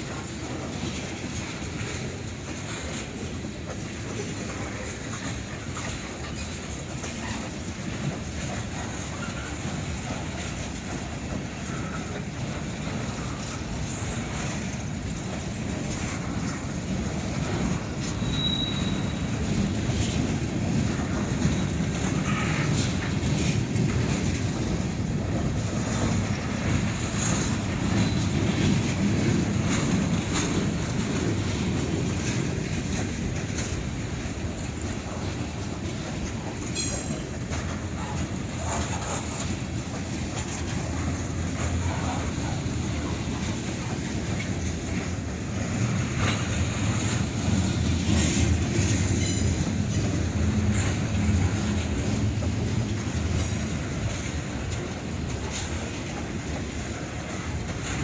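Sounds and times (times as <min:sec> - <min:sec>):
freight train rumbling on rails: 0:00.0 - 0:58.0
rail joint clicks: 0:00.0 - 0:58.0
high wheel squeal: 0:18.0 - 0:19.4.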